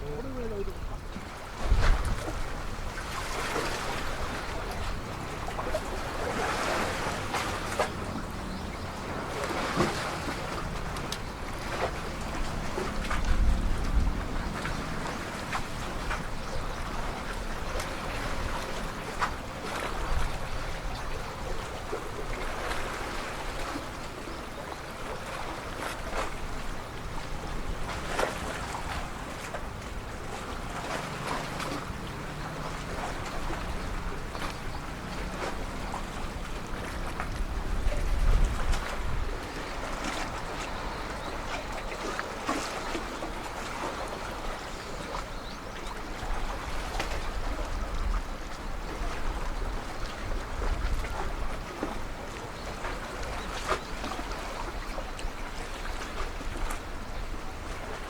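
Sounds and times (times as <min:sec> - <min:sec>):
wind buffeting microphone: 0:00.0 - 0:41.8
sea water: 0:00.0 - 0:58.0.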